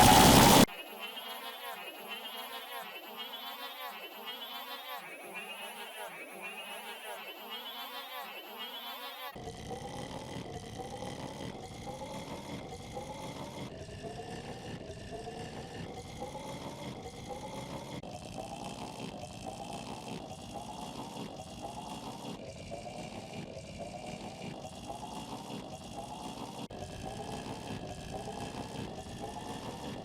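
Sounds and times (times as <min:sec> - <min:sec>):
cartoon snoring wheeze: 0:09.4 - 0:30.0.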